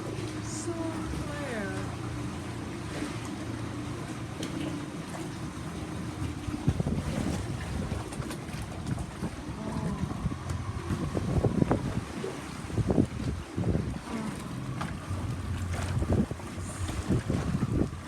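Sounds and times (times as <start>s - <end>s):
boat engine running: 0.0s - 18.0s
wind buffeting microphone: 6.3s - 18.0s.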